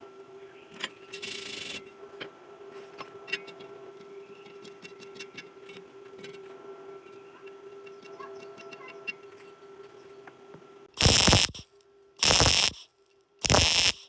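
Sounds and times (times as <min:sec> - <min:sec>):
hiss burst: 0:11.0 - 0:11.6, 0:12.2 - 0:12.8, 0:13.4 - 0:14.0
welding machine humming: 0:11.0 - 0:12.8, 0:13.4 - 0:14.0.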